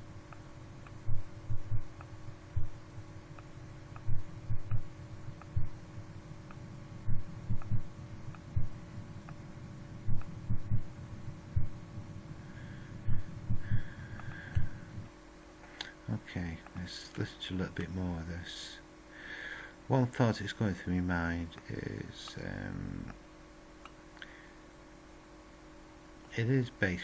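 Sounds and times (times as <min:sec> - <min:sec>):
electrical hum: 0:00.0 - 0:27.0
dull bass thumps: 0:00.9 - 0:02.8, 0:04.0 - 0:05.8, 0:07.0 - 0:08.9, 0:10.0 - 0:12.1, 0:13.0 - 0:13.9, 0:14.5 - 0:15.1.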